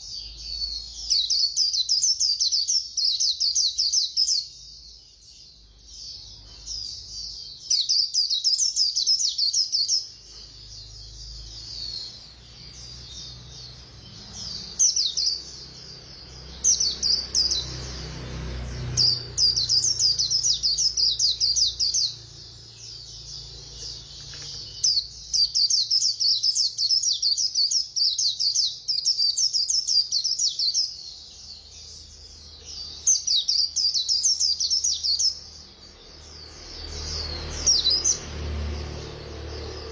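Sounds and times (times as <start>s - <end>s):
bird twittering chirps: 0.0s - 39.9s.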